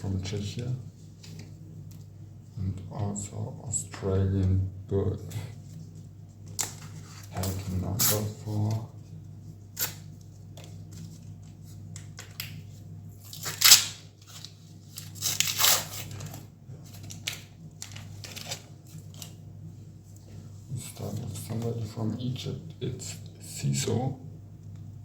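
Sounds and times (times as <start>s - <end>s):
low steady hum: 0.0s - 25.0s
paper wrapper tearing: 13.2s - 16.2s
wrapper crinkling and rustling: 13.2s - 19.4s.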